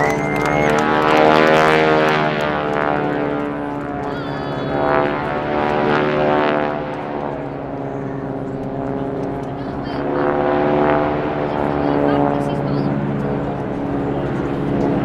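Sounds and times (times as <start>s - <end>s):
propeller aircraft flying past: 0.0s - 15.0s.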